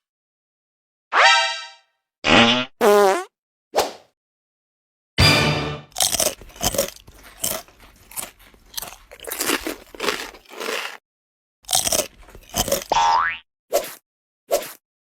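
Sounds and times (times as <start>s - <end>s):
crisp crunching: 6.0s - 11.0s, 11.7s - 12.9s.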